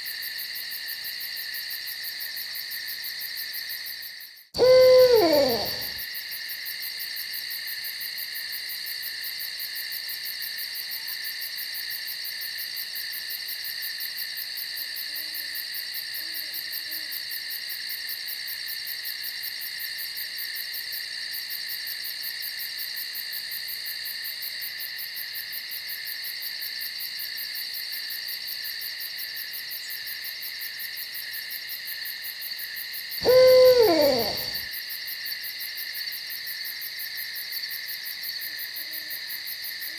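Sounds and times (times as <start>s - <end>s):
night insects chorus: 4.6s - 6.0s, 33.2s - 34.6s
owl call: 4.6s - 6.0s, 33.2s - 34.6s.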